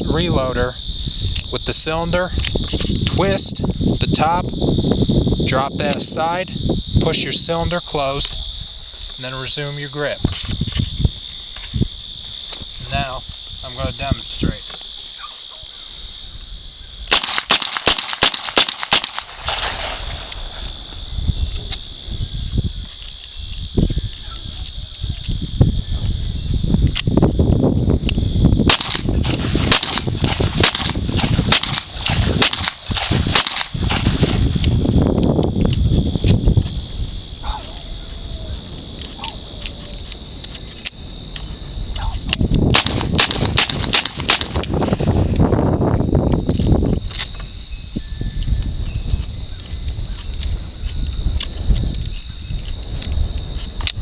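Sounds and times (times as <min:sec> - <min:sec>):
crickets chirping: 0:00.0 - 0:54.0
revolver gunshots: 0:17.1 - 0:20.6, 0:28.7 - 0:34.4, 0:42.7 - 0:45.0.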